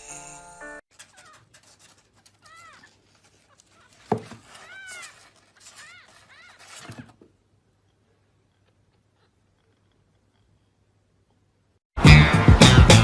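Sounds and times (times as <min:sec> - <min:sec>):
cat meowing: 0:02.4 - 0:07.0.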